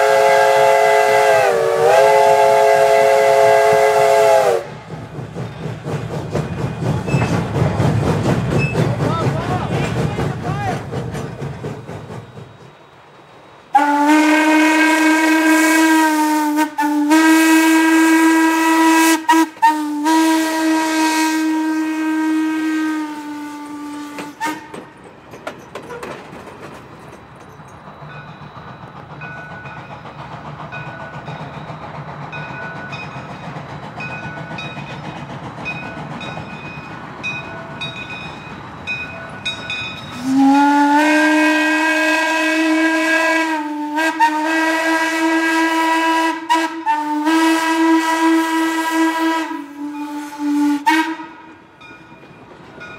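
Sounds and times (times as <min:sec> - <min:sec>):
steam whistle long low blast: 0:00.0 - 0:04.8, 0:13.7 - 0:24.8, 0:40.1 - 0:51.6
steam hissing: 0:00.0 - 0:25.9, 0:27.6 - 0:51.6.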